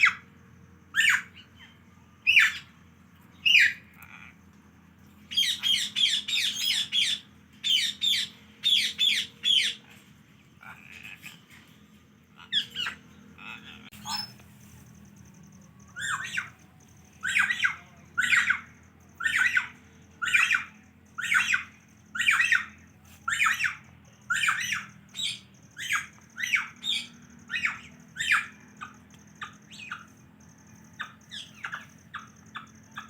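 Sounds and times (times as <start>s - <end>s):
parrot squawking: 1.0s - 1.7s, 2.3s - 2.7s, 3.4s - 4.4s, 5.3s - 10.0s, 10.6s - 11.6s, 12.4s - 14.4s, 16.0s - 16.5s, 17.2s - 30.1s.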